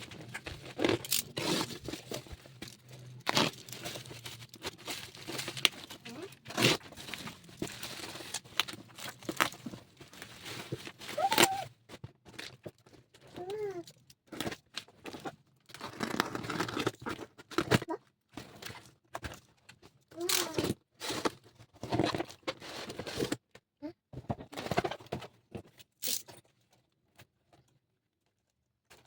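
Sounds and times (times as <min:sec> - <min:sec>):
packaging tearing and crinkling: 0:00.2 - 0:09.7, 0:15.7 - 0:17.7.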